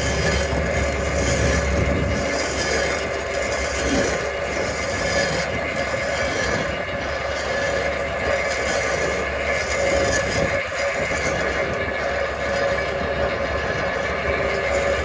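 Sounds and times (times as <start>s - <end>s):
high mechanical whine: 0.0s - 15.0s
stump grinder running: 0.0s - 15.0s.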